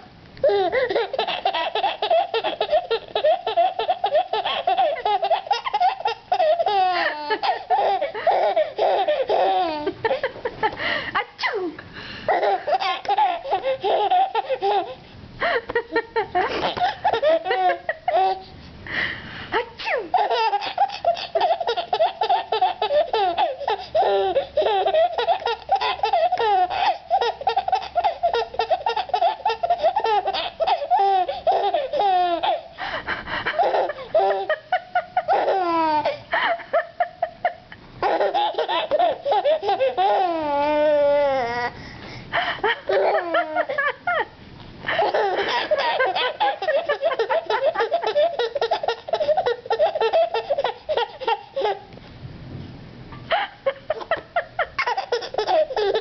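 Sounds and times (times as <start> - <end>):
baby squealing: 0.4 - 9.9, 19.8 - 32.7, 35.3 - 36.2, 38.0 - 41.7, 42.9 - 43.8, 45.0 - 51.8, 54.8 - 56.0
baby laughing: 0.4 - 11.6, 12.3 - 15.0, 15.7 - 18.5, 19.6 - 32.8, 33.5 - 41.7, 42.4 - 44.3, 44.9 - 51.9, 53.3 - 56.0.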